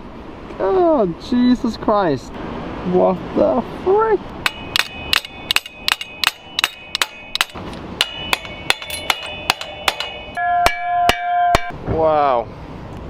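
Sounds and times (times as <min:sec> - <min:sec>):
hammer ringing on metal: 0:04.5 - 0:11.8.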